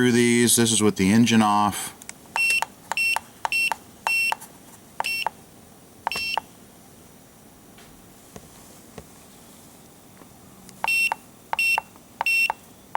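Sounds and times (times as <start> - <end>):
scan tool beeping: 2.4 - 4.4, 5.0 - 5.4, 6.1 - 6.5, 10.8 - 12.6.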